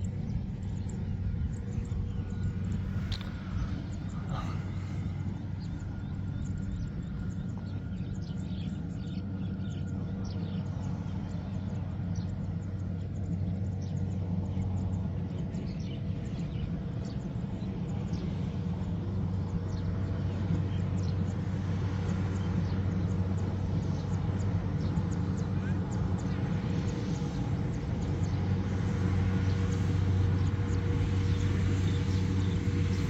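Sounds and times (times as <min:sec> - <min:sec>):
diesel machine engine humming: 0:00.0 - 0:33.0.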